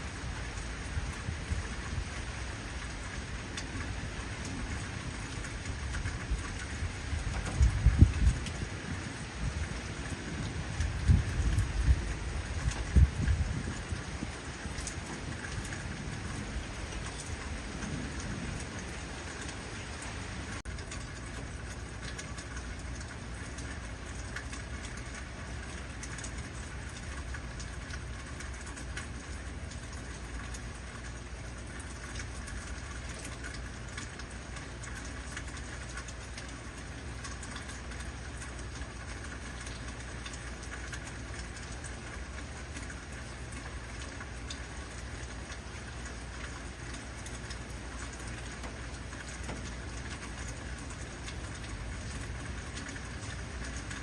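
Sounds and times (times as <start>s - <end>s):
low rumble of thunder: 0.0s - 22.4s
heavy rain falling: 0.0s - 54.0s.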